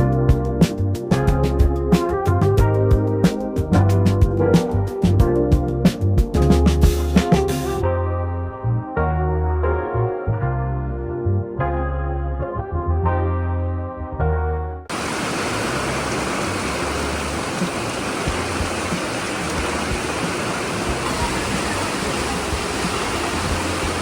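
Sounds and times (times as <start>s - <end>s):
piano background music: 0.0s - 14.9s
water rushing: 14.9s - 24.0s.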